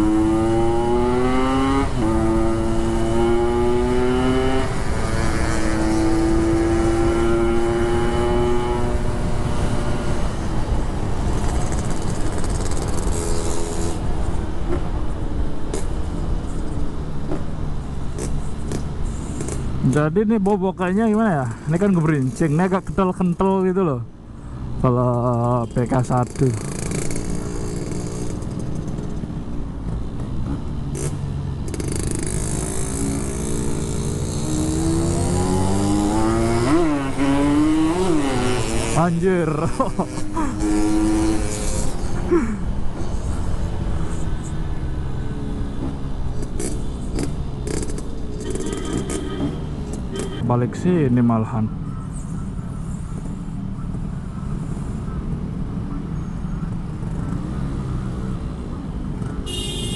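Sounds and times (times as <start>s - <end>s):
two-stroke motorcycle engine: 11.3s - 13.9s, 25.1s - 29.3s, 31.0s - 42.0s.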